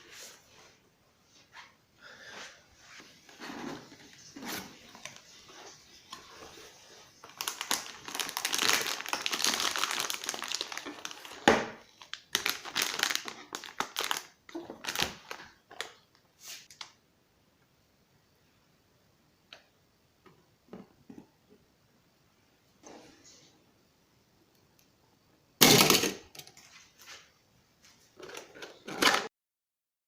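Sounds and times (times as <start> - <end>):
packaging crinkling and rustling: 3.8 - 16.8.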